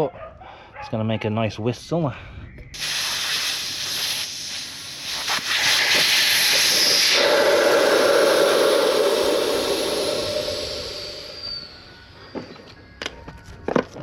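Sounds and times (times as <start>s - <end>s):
air hissing out of tyre: 2.8s - 12.7s.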